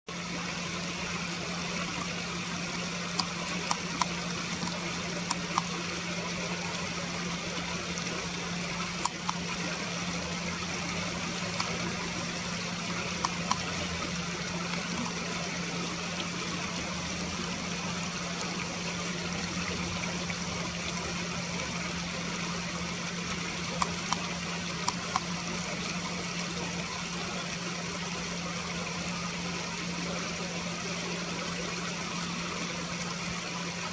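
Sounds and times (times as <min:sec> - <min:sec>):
low steady hum: 0:00.1 - 0:33.9
river water running: 0:00.1 - 0:33.9.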